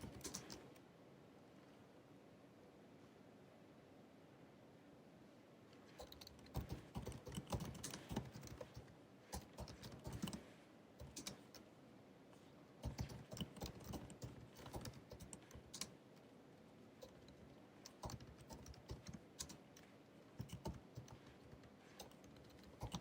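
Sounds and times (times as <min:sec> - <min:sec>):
laptop keyboard typing: 0:00.0 - 0:00.7, 0:06.0 - 0:10.4, 0:11.0 - 0:11.6, 0:12.8 - 0:16.0, 0:17.0 - 0:23.0.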